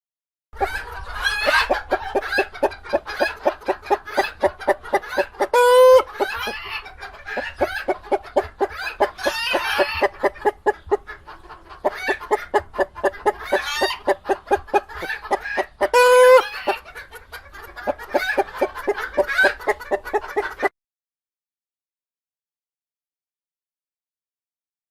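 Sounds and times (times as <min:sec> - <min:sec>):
hen squawks: 0:00.6 - 0:10.3
hens clucking: 0:00.6 - 0:20.7.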